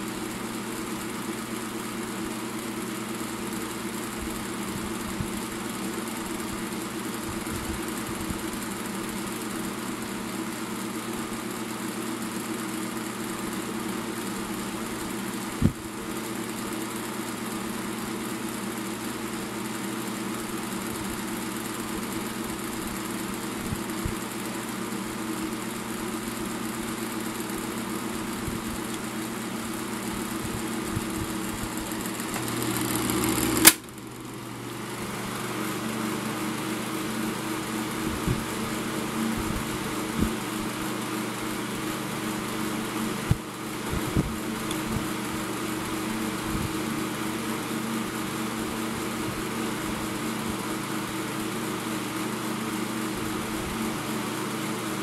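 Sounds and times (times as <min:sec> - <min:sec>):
table fan running: 0:00.0 - 0:55.0
fan bearings rattling: 0:26.4 - 0:33.7
sharp click: 0:33.6 - 0:33.9.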